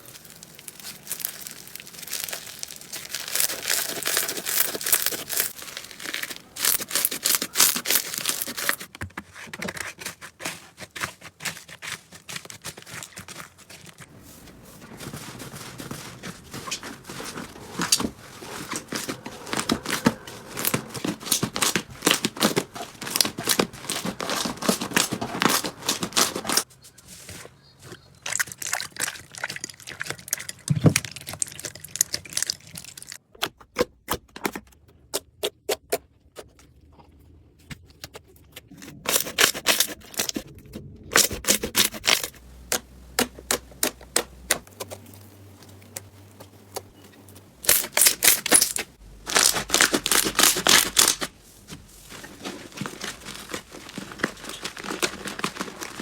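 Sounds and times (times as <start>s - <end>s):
slime crackling and popping: 0.0s - 8.9s, 47.6s - 51.3s, 52.4s - 56.0s.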